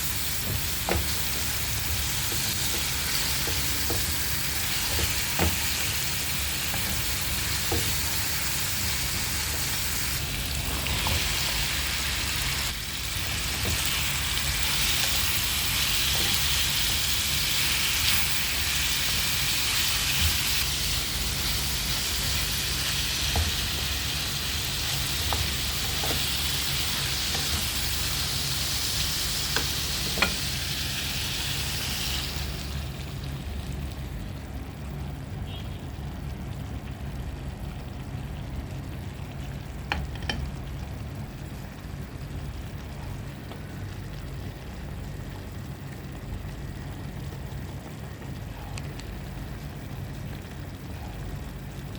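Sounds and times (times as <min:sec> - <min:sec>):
food sizzling in hot oil: 0:00.0 - 0:34.1
utensil clicking against pan: 0:29.5 - 0:30.4.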